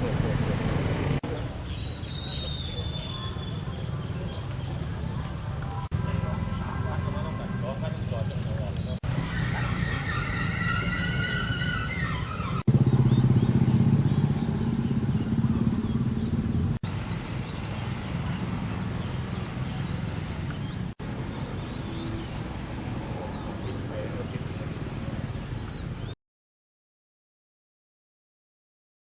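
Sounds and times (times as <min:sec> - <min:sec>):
motorcycle engine rumbling: 0:00.0 - 0:01.8, 0:03.5 - 0:21.0.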